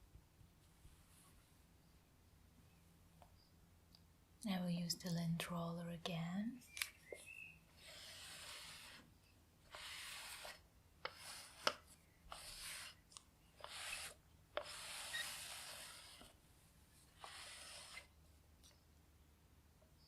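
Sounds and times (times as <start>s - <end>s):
lint roller rasping over fabric: 7.7s - 13.0s, 13.6s - 16.4s, 17.1s - 18.2s.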